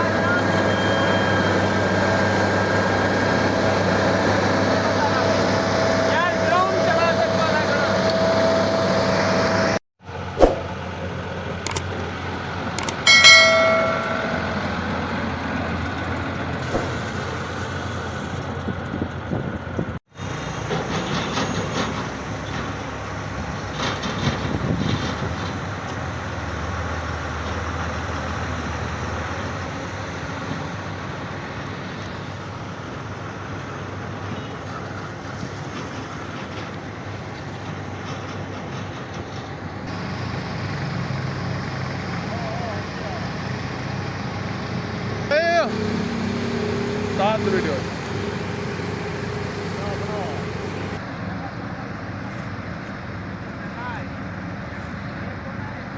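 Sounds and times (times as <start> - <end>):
construction machinery engine running: 0.0 - 55.9
sharp knock: 10.4 - 10.7
short pitched tone: 12.8 - 15.0.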